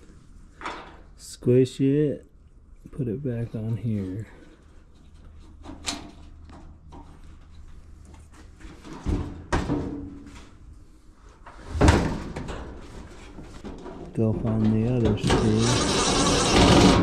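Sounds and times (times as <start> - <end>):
dryer parts knocking and clattering: 8.6 - 10.6, 11.8 - 15.8.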